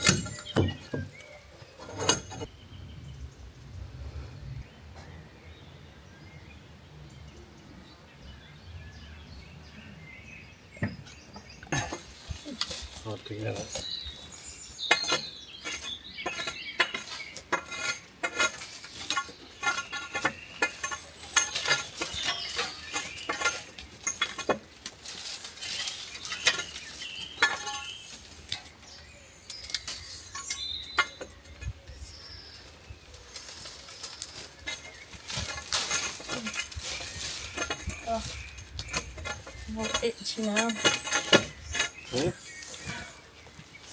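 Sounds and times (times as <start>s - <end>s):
scrap metal clanking: 0.0s - 2.5s, 11.7s - 31.7s, 33.4s - 43.9s.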